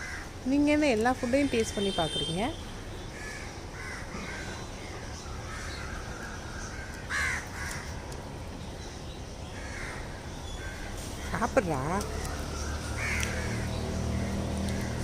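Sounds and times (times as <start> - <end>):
crows cawing: 0.0 - 0.3, 3.2 - 4.7, 5.4 - 8.0, 9.6 - 11.4, 12.2 - 15.0.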